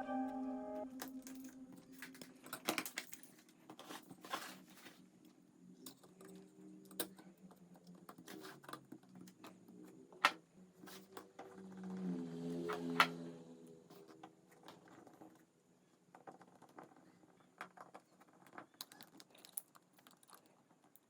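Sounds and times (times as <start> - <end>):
faint steady low tones: 0.0 - 2.4.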